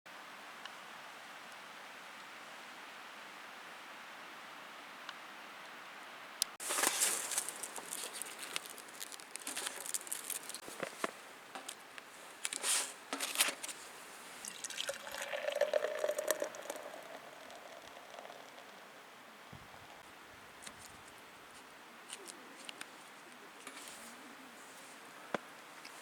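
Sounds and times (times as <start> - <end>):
liquid pouring into container: 14.4 - 18.8.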